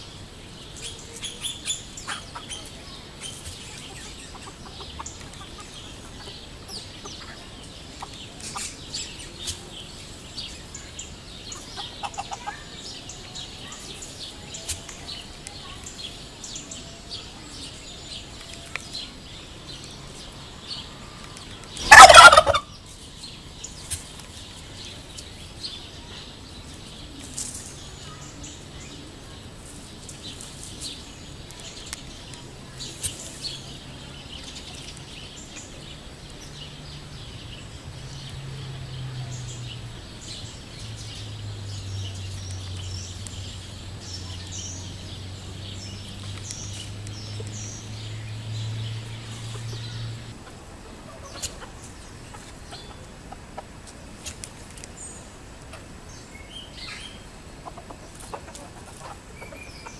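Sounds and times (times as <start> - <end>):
turkey gobbling: 11.6 - 12.7, 21.8 - 22.7, 50.4 - 51.8.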